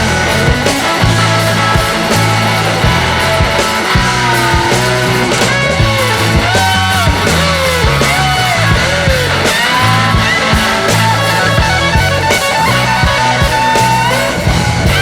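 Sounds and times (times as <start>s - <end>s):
rock music: 0.0s - 15.0s.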